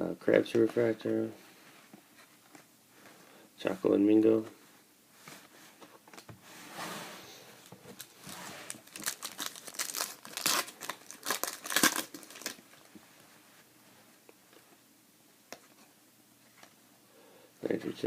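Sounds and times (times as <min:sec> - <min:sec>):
wrapper crinkling and tearing: 0:08.0 - 0:12.8.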